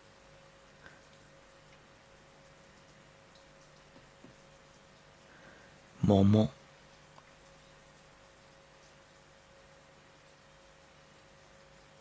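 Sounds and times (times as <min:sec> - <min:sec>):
faint steady hum: 0:00.0 - 0:12.0
faint white noise hiss: 0:00.0 - 0:12.0.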